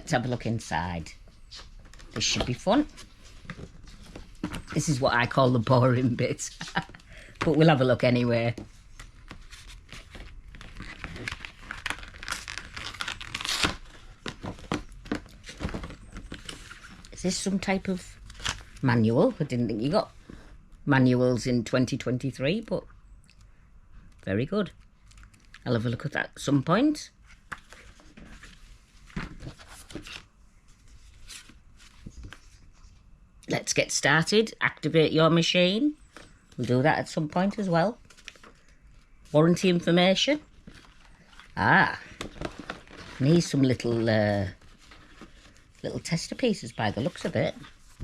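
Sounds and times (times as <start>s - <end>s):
paper crinkling and rustling: 1.4s - 18.8s, 27.2s - 33.1s, 37.4s - 48.0s.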